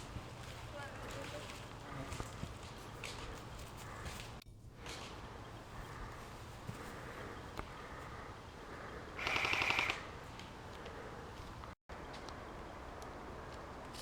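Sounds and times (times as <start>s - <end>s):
airsoft gun full-auto burst: 9.2s - 10.1s.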